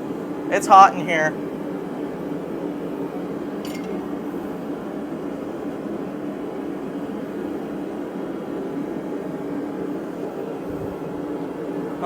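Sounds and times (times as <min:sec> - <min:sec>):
workshop equipment humming: 0:03.6 - 0:05.0.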